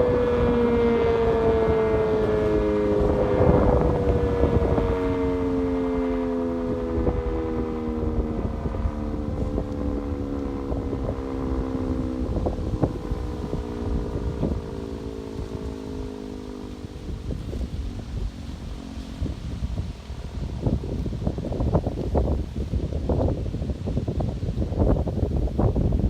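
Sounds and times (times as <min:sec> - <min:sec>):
warning siren winding down: 0:00.0 - 0:26.0
wind rumble on microphone: 0:00.0 - 0:26.0.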